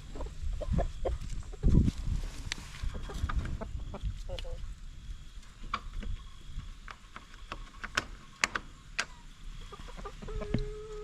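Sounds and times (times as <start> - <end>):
sharp clicks and knocks: 6.8 - 9.2.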